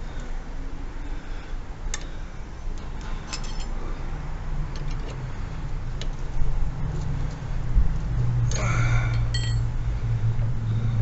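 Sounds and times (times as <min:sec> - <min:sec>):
steady low rumble: 0:05.2 - 0:11.0.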